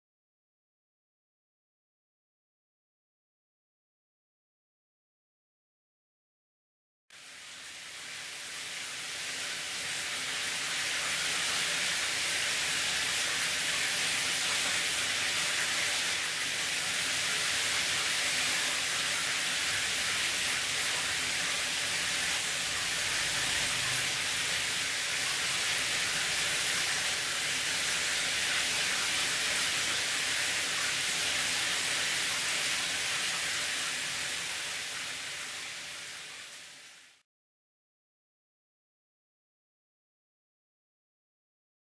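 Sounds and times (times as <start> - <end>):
shower head spraying water: 7.4 - 37.2.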